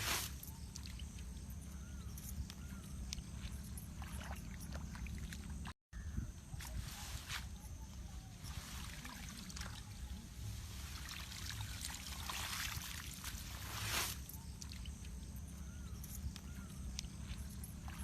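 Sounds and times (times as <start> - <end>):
water trickling and splashing: 3.2 - 5.8, 8.3 - 15.4, 17.0 - 18.0.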